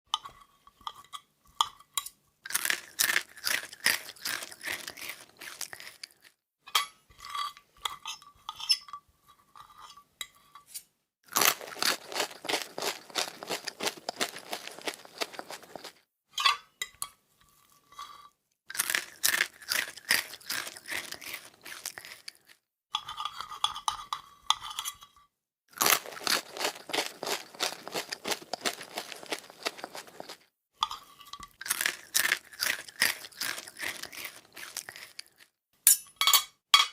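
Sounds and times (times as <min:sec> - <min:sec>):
crunchy food chewing: 0:02.5 - 0:06.4, 0:11.3 - 0:16.0, 0:18.7 - 0:22.6, 0:25.7 - 0:30.5, 0:31.5 - 0:35.6.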